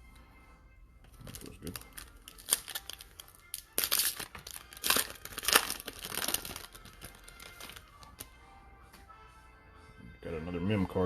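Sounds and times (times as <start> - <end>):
wrapper tearing and crinkling: 1.2 - 8.3.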